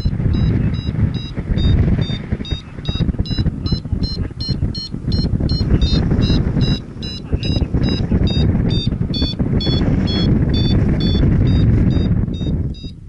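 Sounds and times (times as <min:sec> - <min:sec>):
variometer beeping rapidly: 0:00.0 - 0:13.0
wind rushing over microphone: 0:00.0 - 0:13.0.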